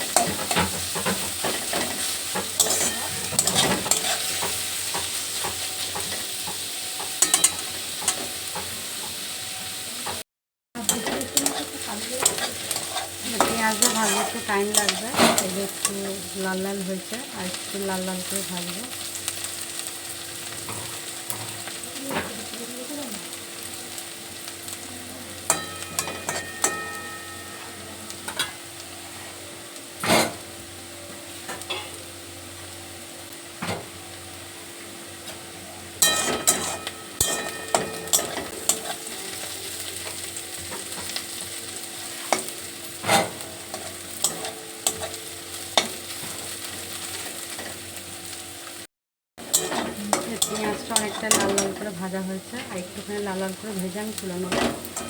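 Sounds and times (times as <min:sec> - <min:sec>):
onions sizzling in oil: 0:00.0 - 0:10.2, 0:10.8 - 0:55.0
spatula scraping a pan: 0:00.1 - 0:08.7, 0:10.8 - 0:16.0, 0:25.5 - 0:27.5, 0:36.0 - 0:41.4, 0:42.0 - 0:47.8.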